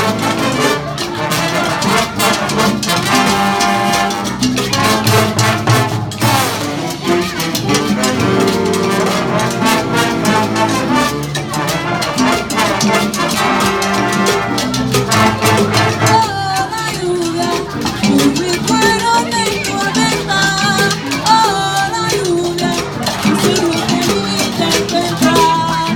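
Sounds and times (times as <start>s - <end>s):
brass horns melody: 0.0s - 16.9s
salsa jazz band playing: 0.0s - 25.9s.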